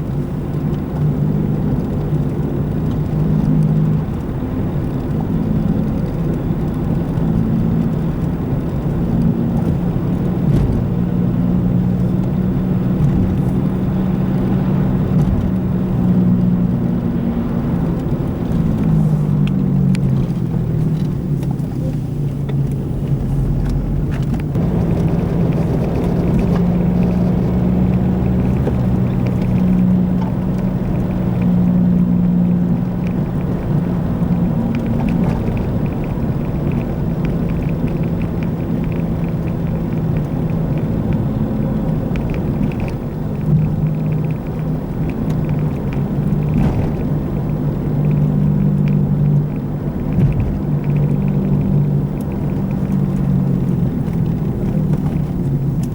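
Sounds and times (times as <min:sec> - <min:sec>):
tyre and road rumble: 0:00.0 - 0:55.9
wheel bearing drone: 0:22.4 - 0:55.9.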